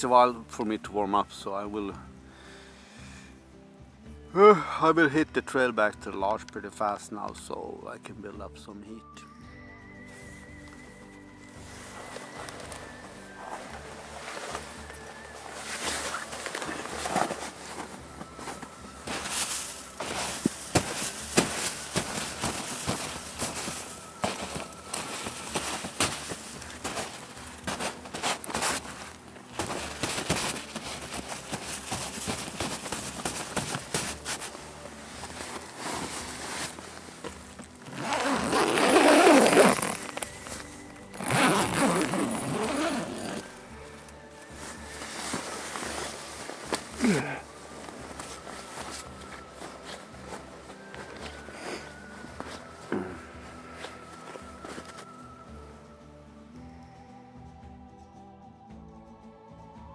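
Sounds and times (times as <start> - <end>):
footsteps crunching through snow: 10.2 - 55.1
zipper pulled: 11.8 - 34.6, 35.2 - 43.6
rustling and clicking: 12.1 - 43.5.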